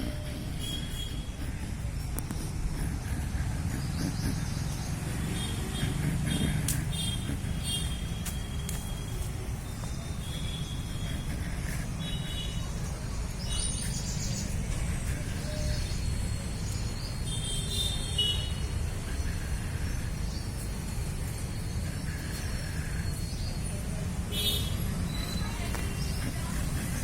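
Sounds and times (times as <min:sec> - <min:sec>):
steady low rumble: 0:00.0 - 0:13.6
small birds chirping: 0:00.0 - 0:27.0.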